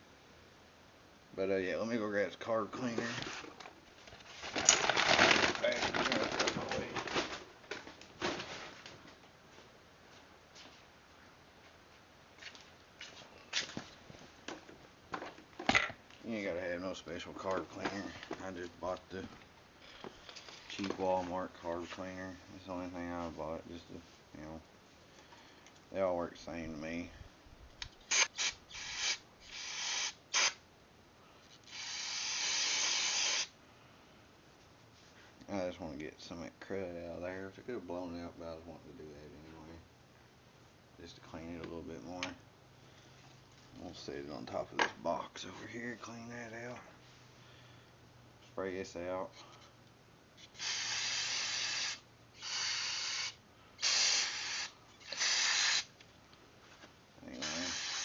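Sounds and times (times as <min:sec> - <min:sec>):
aerosol spray: 0:28.1 - 0:30.6, 0:31.7 - 0:33.5, 0:50.5 - 0:55.9, 0:57.4 - 0:58.0.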